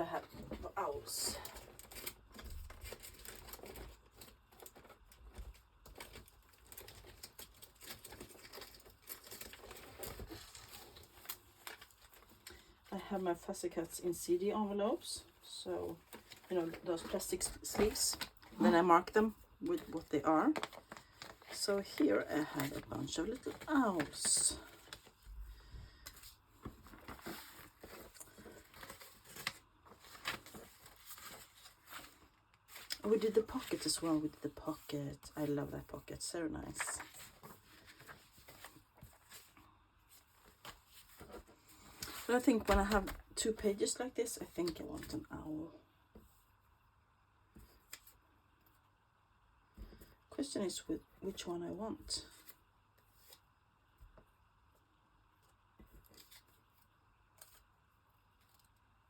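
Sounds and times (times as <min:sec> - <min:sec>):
paper and plastic sleeves handled: 0:00.0 - 0:45.4.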